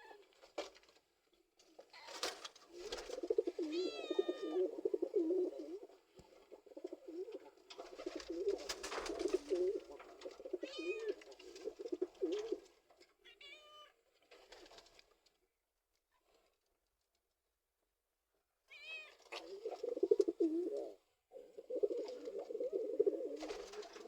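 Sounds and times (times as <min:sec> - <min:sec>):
pigeons cooing: 0:02.7 - 0:12.7, 0:19.3 - 0:24.0
cat meowing: 0:03.6 - 0:04.6, 0:10.6 - 0:11.2, 0:13.3 - 0:14.0.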